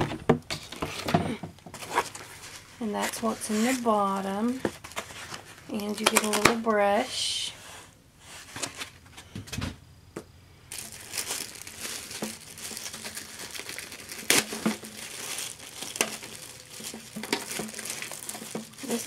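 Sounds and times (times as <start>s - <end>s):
packaging crinkling and rustling: 0.0s - 6.7s, 10.7s - 19.0s.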